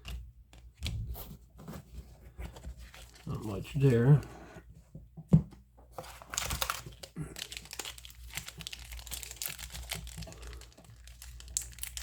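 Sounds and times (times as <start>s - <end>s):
wrapper crinkling: 6.0s - 12.0s.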